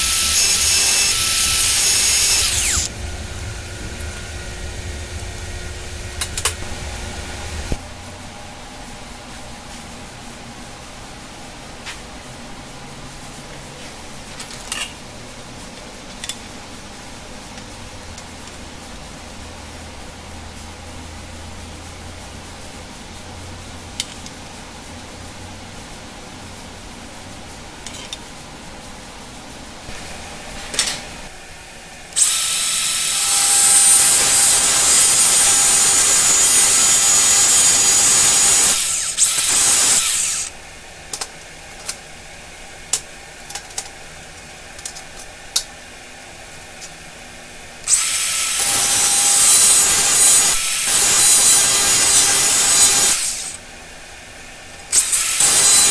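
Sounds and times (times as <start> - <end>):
power tool whining into steel: 0.0 - 7.8, 32.2 - 40.5, 47.9 - 53.6, 54.9 - 55.9.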